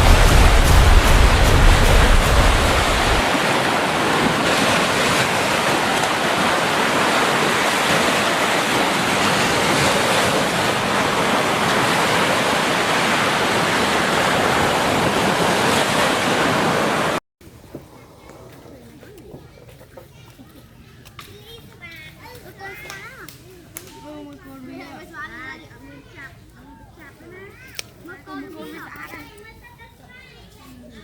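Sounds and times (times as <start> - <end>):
low rumble: 0.0 - 3.2
steady rushing noise: 0.0 - 17.2.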